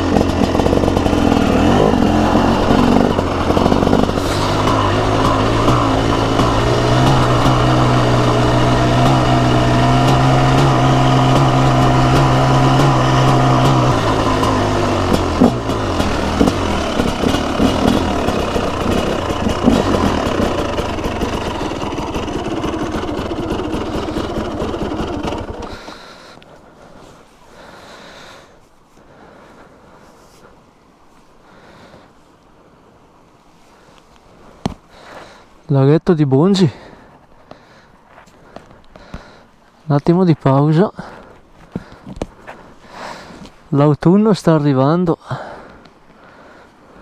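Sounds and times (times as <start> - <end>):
engine pops: 0.0 - 25.8
two-stroke motorcycle engine: 0.0 - 26.0.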